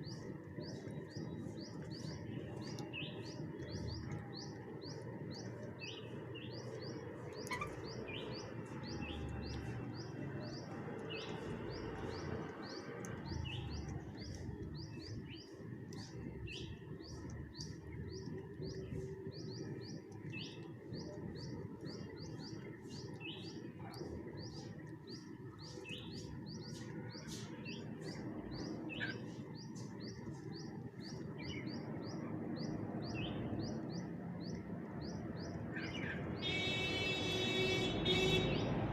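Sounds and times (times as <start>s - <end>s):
low background rumble: 0.0s - 27.2s
birds chirping: 0.0s - 38.9s.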